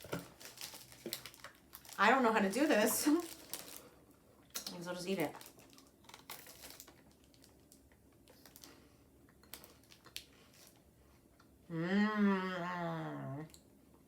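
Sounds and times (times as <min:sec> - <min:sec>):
crunching chocolate wafer bar: 0:00.0 - 0:03.9, 0:04.5 - 0:08.8
person humming: 0:11.7 - 0:13.6.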